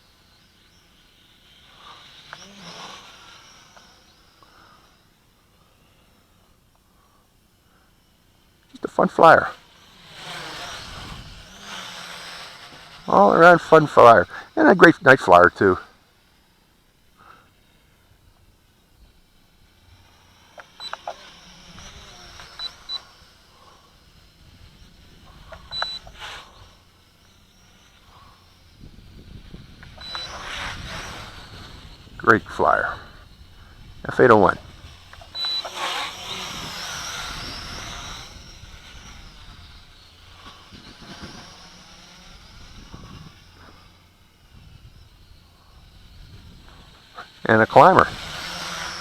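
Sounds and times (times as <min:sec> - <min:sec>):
toy drone propellers whining: 0:00.0 - 0:49.0
sharp clicks: 0:20.5 - 0:23.0, 0:25.5 - 0:26.1.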